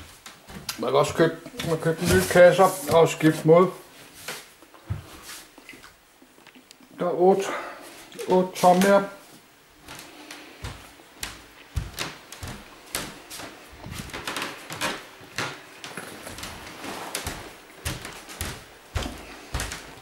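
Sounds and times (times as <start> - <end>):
boxes knocking and clattering: 1.6 - 3.2.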